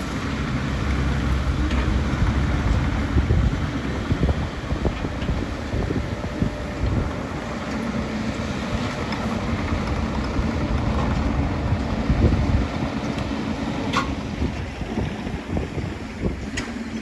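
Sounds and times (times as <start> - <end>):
large engine rumbling: 0.0 - 17.0.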